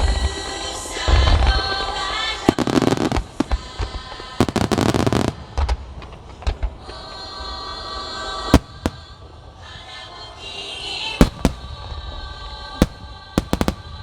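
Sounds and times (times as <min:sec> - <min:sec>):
background music: 0:00.0 - 0:14.0
fireworks bursting: 0:00.0 - 0:14.0.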